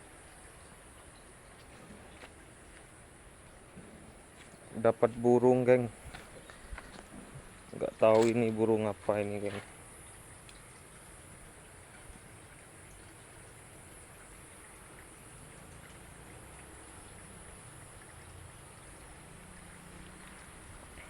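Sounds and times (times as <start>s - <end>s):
faint background hiss: 0.0s - 21.0s
small tick: 10.4s - 10.7s.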